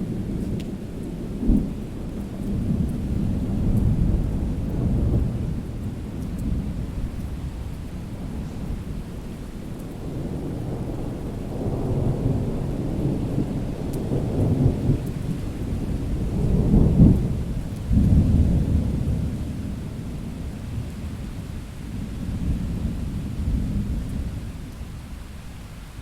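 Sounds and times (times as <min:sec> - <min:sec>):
rolling thunder: 0:00.0 - 0:25.2
steady rain: 0:00.0 - 0:26.0.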